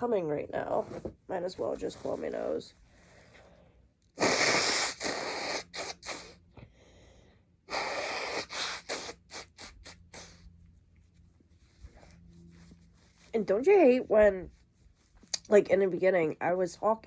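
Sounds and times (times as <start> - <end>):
person blowing nose: 4.2 - 6.4, 7.7 - 10.5.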